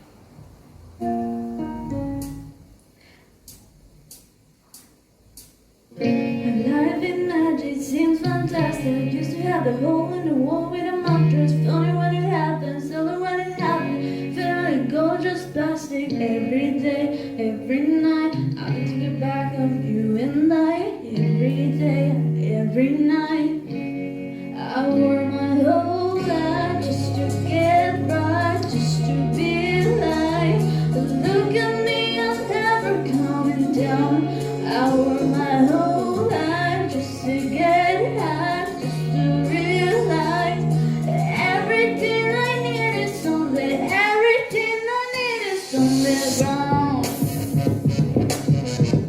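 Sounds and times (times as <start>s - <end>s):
woman singing pop melody: 6.0s - 48.4s
bass line: 26.1s - 43.8s, 46.0s - 49.0s.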